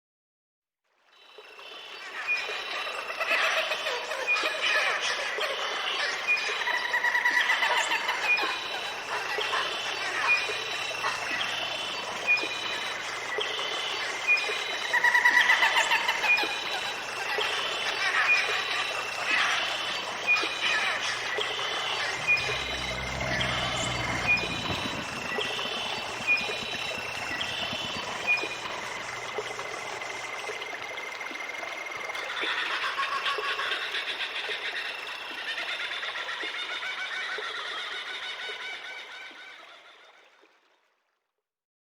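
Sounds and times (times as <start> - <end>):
birds calling: 8.0 - 31.1
rapid chattering notes: 16.8 - 30.8.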